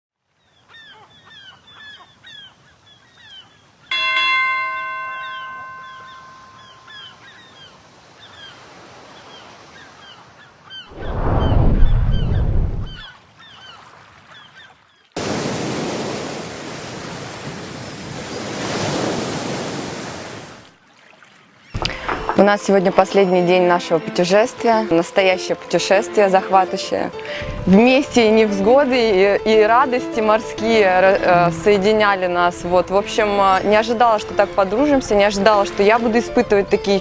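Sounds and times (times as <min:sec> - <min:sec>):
birds calling: 0:00.5 - 0:10.9, 0:21.3 - 0:37.0
struck ringing tone: 0:03.9 - 0:07.6
surf rushing: 0:10.9 - 0:13.1, 0:15.2 - 0:20.6.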